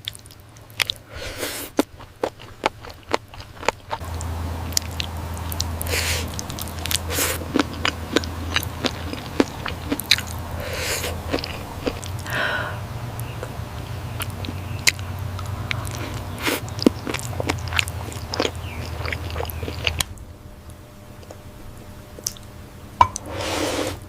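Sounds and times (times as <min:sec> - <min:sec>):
wet chewing and mouth clicks: 0:00.0 - 0:12.4, 0:13.0 - 0:20.2, 0:22.1 - 0:23.3
steady low hum: 0:00.0 - 0:24.0
soft slurps: 0:04.8 - 0:12.2.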